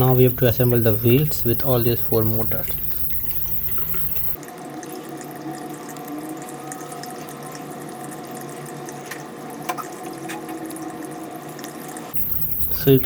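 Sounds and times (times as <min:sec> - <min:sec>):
steady hum and hiss: 0:00.0 - 0:05.1, 0:07.8 - 0:13.0.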